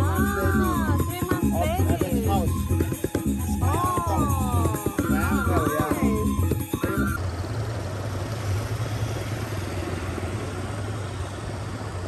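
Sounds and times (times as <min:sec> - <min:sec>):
music with singing: 0:00.0 - 0:07.2.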